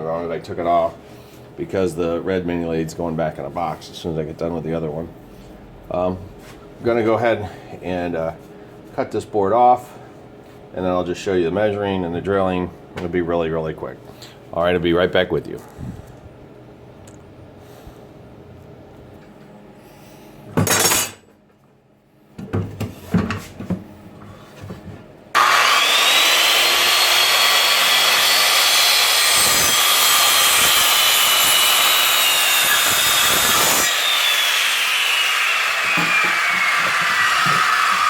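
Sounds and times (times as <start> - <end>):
power saw cutting wood: 25.4 - 38.0.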